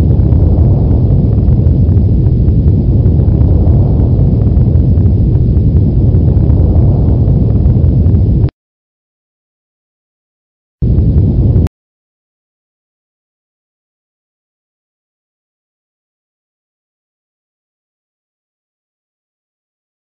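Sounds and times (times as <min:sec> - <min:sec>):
deep earthquake rumble: 0:00.0 - 0:08.5, 0:10.8 - 0:11.7.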